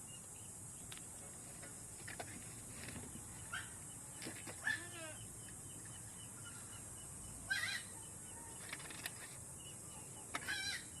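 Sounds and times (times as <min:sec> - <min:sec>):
steady high-pitched hiss: 0:00.0 - 0:11.0
chicken squawking: 0:07.5 - 0:07.9.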